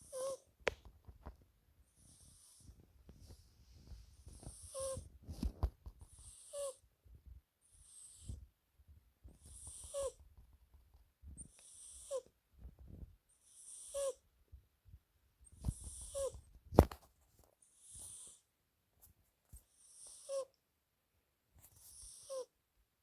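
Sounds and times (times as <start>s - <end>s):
cat snoring: 0.0s - 0.4s, 1.9s - 2.7s, 6.1s - 6.8s, 7.7s - 8.4s, 9.4s - 10.2s, 11.4s - 12.2s, 13.4s - 14.2s, 19.8s - 20.5s, 21.9s - 22.5s.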